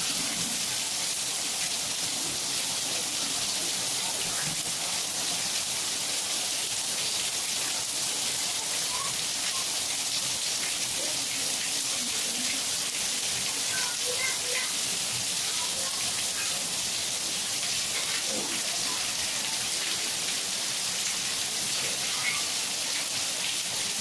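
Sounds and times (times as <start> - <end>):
heavy rain falling: 0.0 - 24.0.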